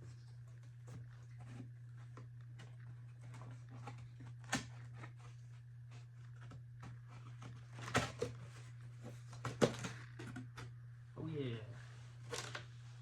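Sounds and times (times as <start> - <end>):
steady low hum: 0.0 - 13.0
cardboard packaging rustling: 12.2 - 12.8.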